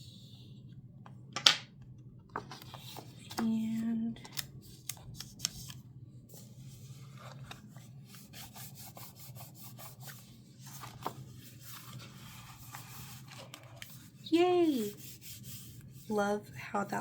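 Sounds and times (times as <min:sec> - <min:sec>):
scratchy rubbing on paper: 0:08.1 - 0:16.4.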